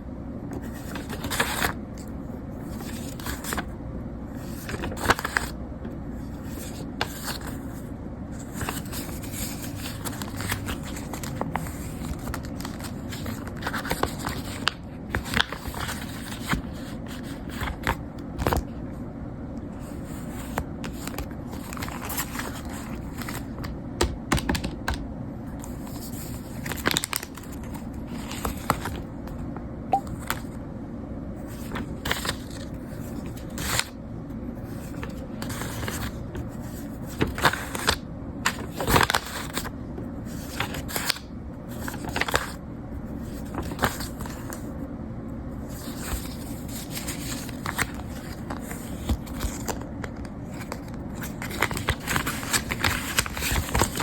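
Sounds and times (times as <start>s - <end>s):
steady low hum: 0.0s - 54.0s
paper rustling: 0.6s - 2.0s, 4.4s - 5.6s, 6.2s - 18.6s, 19.8s - 23.7s, 25.6s - 29.0s, 31.4s - 34.0s, 34.6s - 39.7s, 40.3s - 44.7s, 45.7s - 54.0s.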